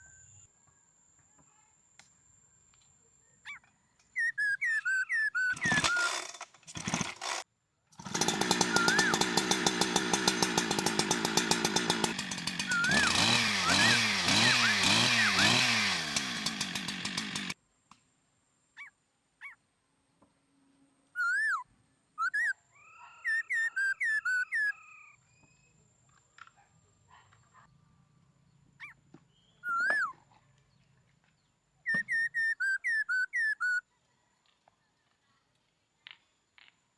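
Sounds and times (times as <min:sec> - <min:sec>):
chainsaw idling and revving: 0:05.5 - 0:07.4, 0:08.0 - 0:17.6
short chirping calls: 0:22.2 - 0:25.7, 0:31.9 - 0:33.8.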